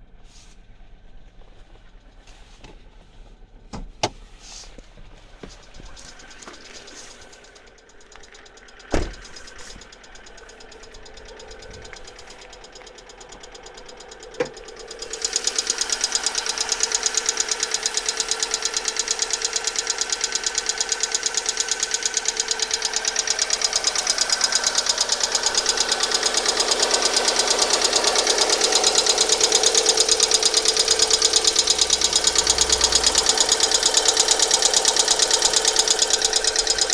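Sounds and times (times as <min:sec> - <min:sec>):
sharp thumps: 0:05.4 - 0:12.9
engine valve knocking: 0:05.6 - 0:36.9.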